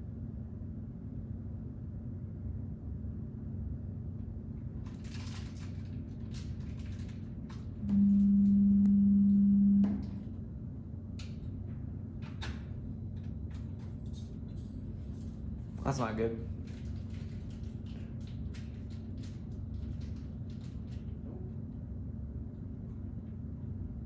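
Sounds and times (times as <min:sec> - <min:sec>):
speaker circuit hum: 0:07.7 - 0:13.6
loud steady alarm tone: 0:07.8 - 0:10.2.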